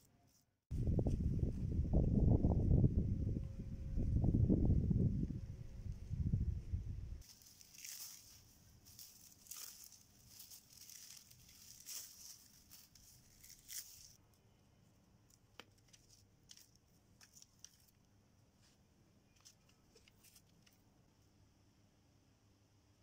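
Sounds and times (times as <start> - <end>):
faint scratching strokes: 7.2 - 14.2.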